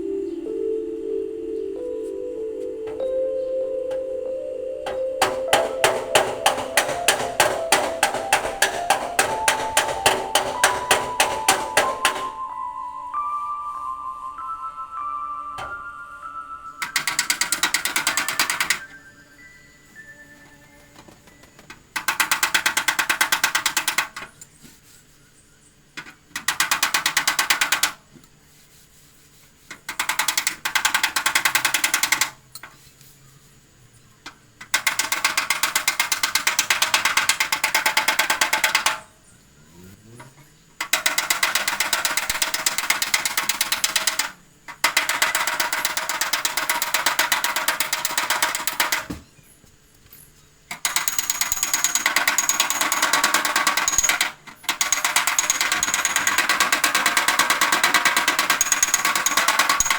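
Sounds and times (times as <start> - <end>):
metallic tapping on car hood: 4.9 - 12.4.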